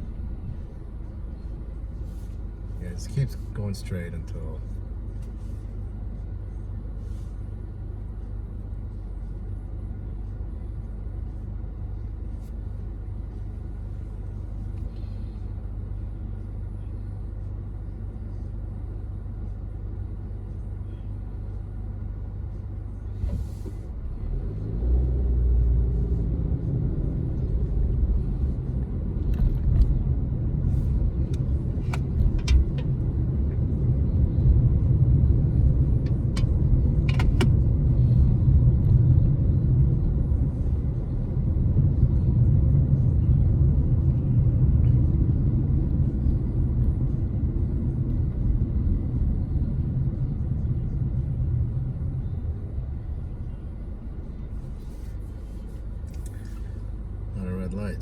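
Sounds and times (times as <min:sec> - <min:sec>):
road noise: 0:00.0 - 0:58.0
car engine accelerating: 0:23.2 - 0:57.6.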